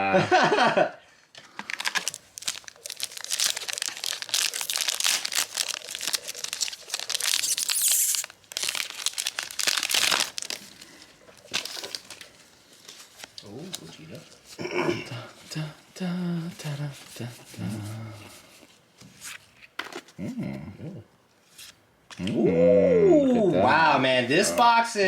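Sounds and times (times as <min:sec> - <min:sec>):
foil wrapper tearing and crinkling: 0:01.6 - 0:13.8.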